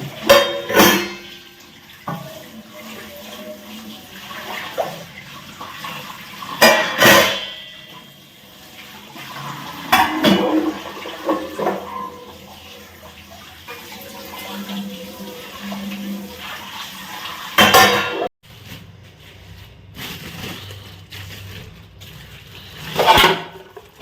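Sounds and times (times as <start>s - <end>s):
pots and dishes clattering: 0.0s - 8.4s, 9.0s - 16.6s, 17.2s - 18.3s, 22.6s - 24.0s
water running: 0.0s - 24.0s.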